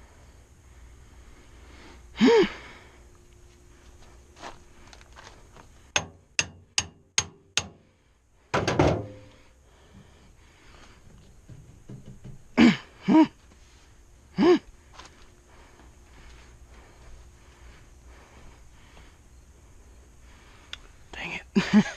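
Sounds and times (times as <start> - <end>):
heavy clattering thud: 8.5 - 9.4.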